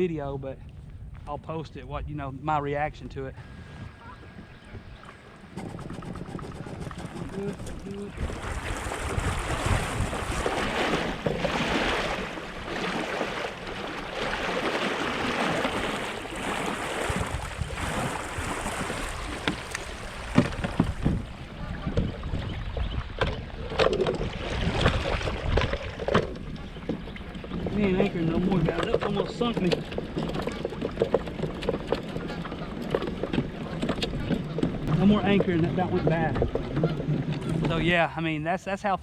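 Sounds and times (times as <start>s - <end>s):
wind buffeting microphone: 0.7s - 38.1s
knocks on kayak hull: 5.6s - 12.2s, 15.4s - 21.3s
river water rushing and splashing: 8.1s - 21.1s.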